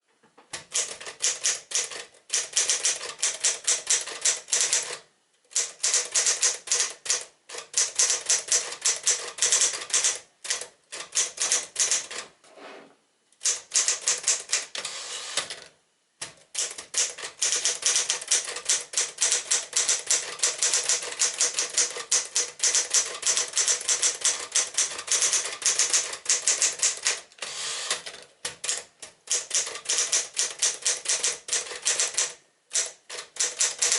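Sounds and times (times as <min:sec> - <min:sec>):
manual typewriter typing: 0:00.5 - 0:12.2, 0:13.4 - 0:15.7, 0:16.5 - 0:33.9.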